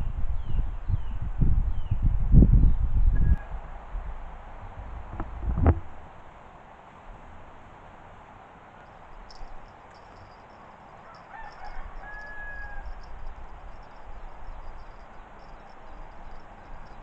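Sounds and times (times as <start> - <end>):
low rumble: 1.2 - 6.2
distant bird calling: 8.8 - 17.0
fast high-pitched chirping: 9.2 - 17.0.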